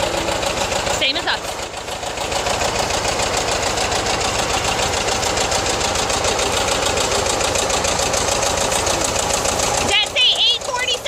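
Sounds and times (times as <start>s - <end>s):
tractor and baler clattering: 0.0s - 11.0s.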